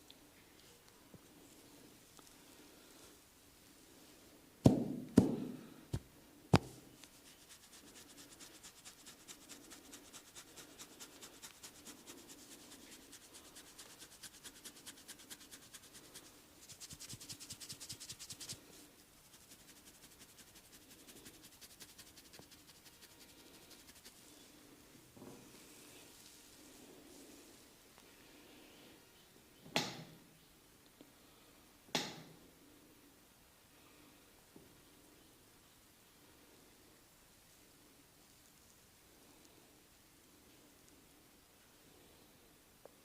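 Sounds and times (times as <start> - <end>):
light strokes on skin: 5.9 - 28.1.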